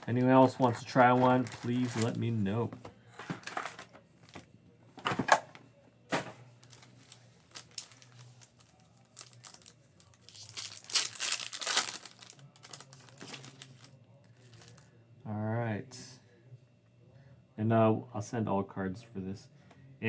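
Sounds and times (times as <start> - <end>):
plastic wrapping crinkling and tearing: 0.0 - 2.3, 3.4 - 4.4, 6.6 - 14.9.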